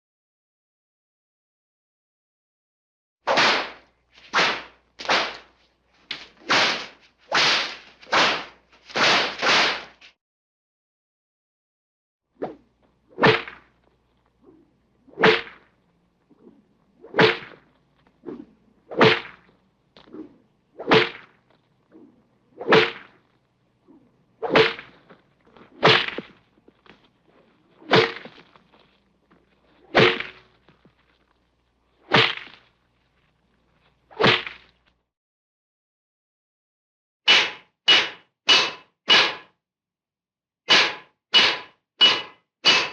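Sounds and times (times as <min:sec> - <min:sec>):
whip cracks: 0:03.3 - 0:05.5, 0:06.1 - 0:10.1, 0:13.2 - 0:13.7, 0:14.5 - 0:15.7, 0:17.1 - 0:17.6, 0:18.3 - 0:19.5, 0:20.8 - 0:21.4, 0:22.6 - 0:23.2, 0:24.4 - 0:25.0, 0:25.8 - 0:26.4, 0:27.8 - 0:28.3, 0:29.9 - 0:30.4, 0:37.3 - 0:39.5, 0:40.7 - 0:42.9.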